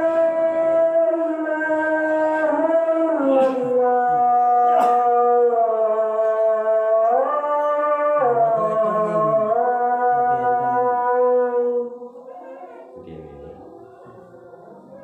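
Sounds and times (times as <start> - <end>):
person chanting: 0.0 - 15.0
steady low tone: 13.0 - 15.0.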